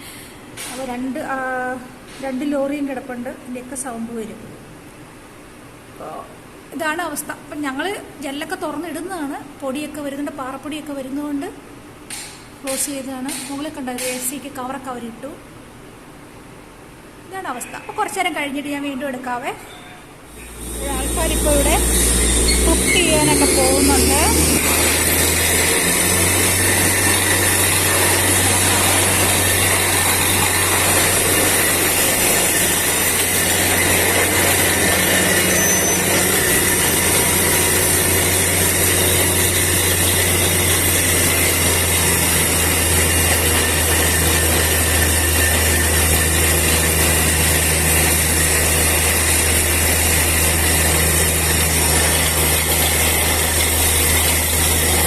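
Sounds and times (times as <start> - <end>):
drilling rig drilling: 20.3 - 55.0.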